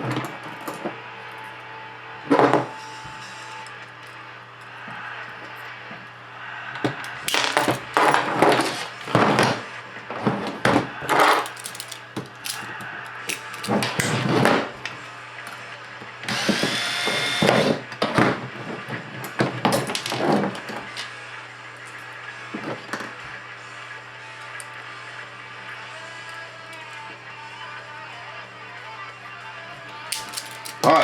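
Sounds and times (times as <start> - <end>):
cordless drill whining: 16.3 - 17.8.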